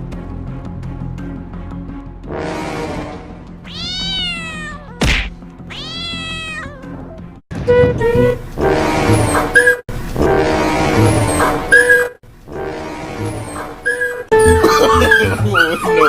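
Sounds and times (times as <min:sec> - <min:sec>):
background music: 0:00.0 - 0:09.7, 0:13.1 - 0:16.0
cat meowing: 0:03.7 - 0:05.0, 0:05.7 - 0:07.2.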